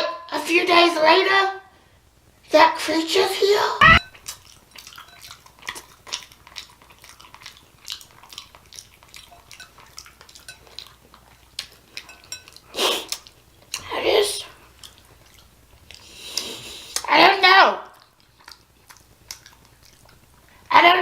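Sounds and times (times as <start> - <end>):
utensils clinking against dishes: 9.2 - 11.0, 11.9 - 12.6.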